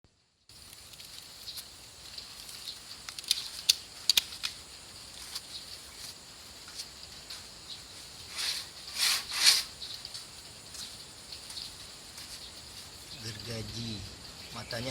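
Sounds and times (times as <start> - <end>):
hand saw cutting wood: 8.3 - 9.7.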